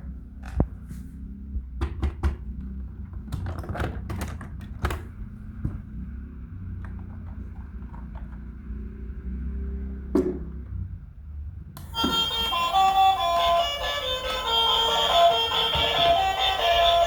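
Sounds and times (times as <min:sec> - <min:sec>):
plastic toys clicking and knocking: 0:03.1 - 0:05.1, 0:15.2 - 0:17.0.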